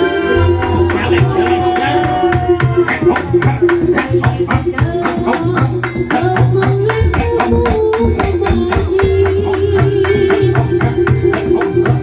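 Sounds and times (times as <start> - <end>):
fast drum beat: 0.0 - 12.0
strong bass: 0.0 - 12.0
sustained melody line: 0.0 - 12.0.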